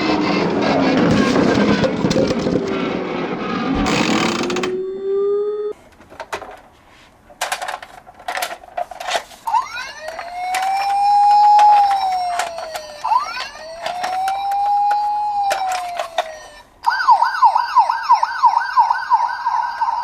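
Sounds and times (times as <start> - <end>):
sharp clicks and knocks: 3.8 - 4.8
toy siren wailing: 4.4 - 5.8, 9.5 - 20.0.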